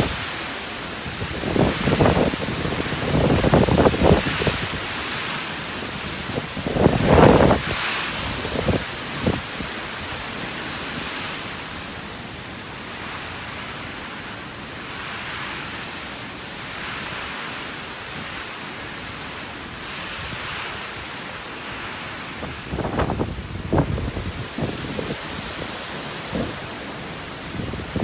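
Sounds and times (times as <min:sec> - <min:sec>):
gusty wind: 0:00.0 - 0:28.0
wind buffeting microphone: 0:00.9 - 0:05.2, 0:05.9 - 0:09.8, 0:21.8 - 0:28.0.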